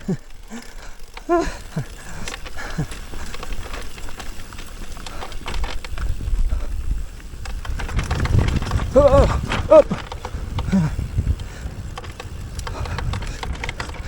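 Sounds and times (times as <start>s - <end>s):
rider grunting: 0.0s - 4.1s, 8.2s - 14.0s
bike rattling over rough trail: 0.0s - 14.0s
tyres and wind rumble: 0.0s - 14.0s.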